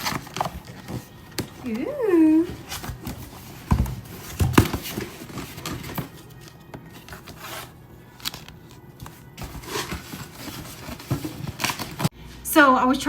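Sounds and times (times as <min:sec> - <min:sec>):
cardboard scraping and rustling: 0:00.0 - 0:12.1.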